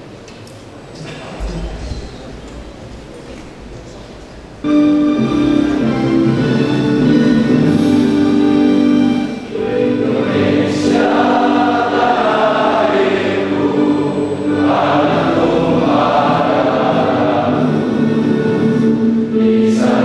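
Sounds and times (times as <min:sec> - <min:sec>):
instrumental accompaniment: 0:04.6 - 0:20.0
choir singing: 0:05.1 - 0:20.0.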